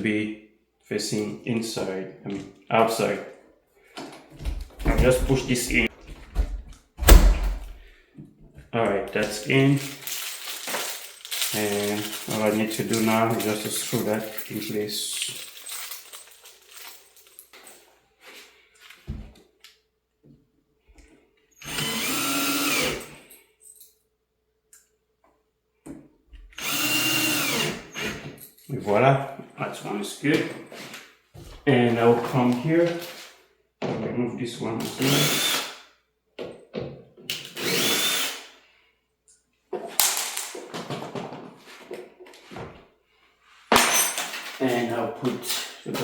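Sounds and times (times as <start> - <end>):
metal hardware clicking and rattling: 9.2 - 17.7
power drill driving screw: 21.6 - 23.2, 26.6 - 28.3, 34.8 - 35.8, 37.3 - 38.5.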